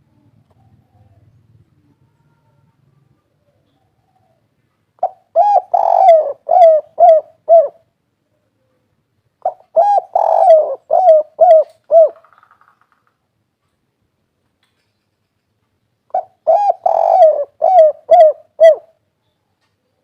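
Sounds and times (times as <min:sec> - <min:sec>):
dove cooing: 0:05.0 - 0:07.9, 0:09.4 - 0:12.4, 0:16.1 - 0:19.0.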